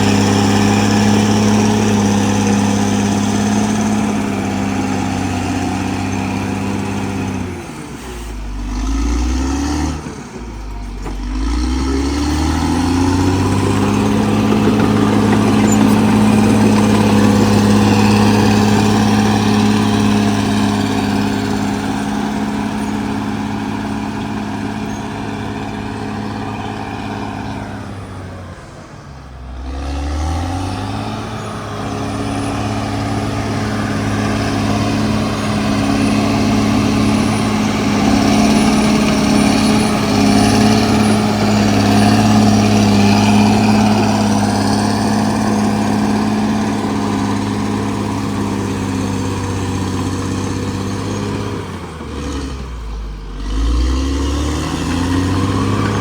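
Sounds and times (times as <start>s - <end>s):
bulldozer diesel engine revving: 0.0s - 56.0s.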